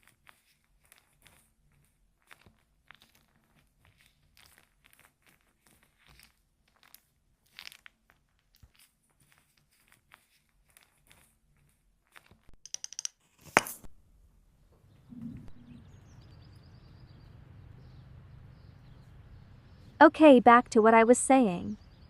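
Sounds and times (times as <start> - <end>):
soft crinkling and crunching: 0.0 - 12.6
quick clicks: 12.6 - 13.2.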